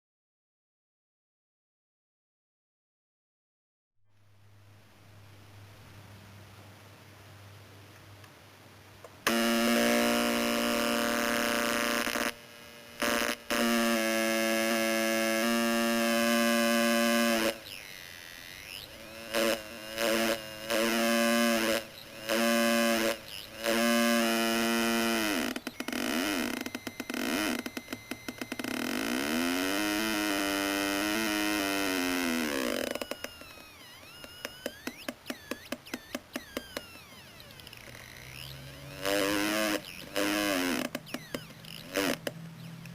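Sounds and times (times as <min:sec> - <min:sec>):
buzzy synthesizer tones: 0:09.2 - 0:42.3.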